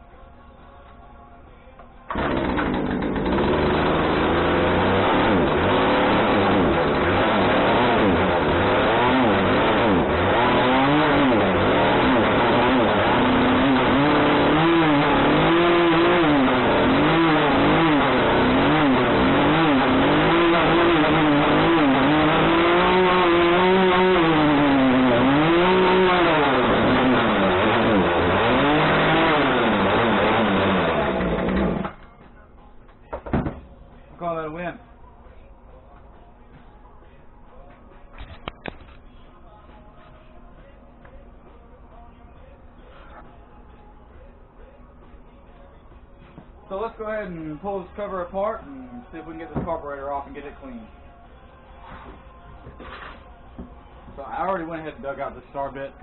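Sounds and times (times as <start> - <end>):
chainsaw engine revving: 2.1 - 32.0.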